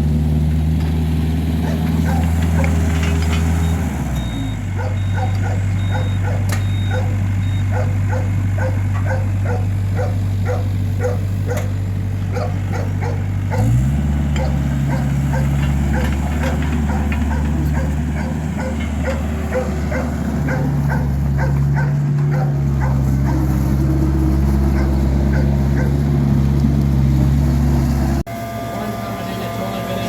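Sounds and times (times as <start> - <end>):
machine humming: 28.3 - 30.0.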